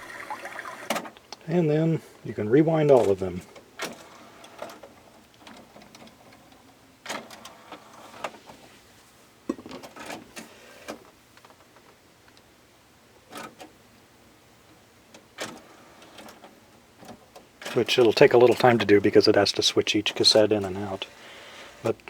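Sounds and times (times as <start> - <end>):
cassette deck mechanism running: 0.0 - 1.2, 15.1 - 18.9.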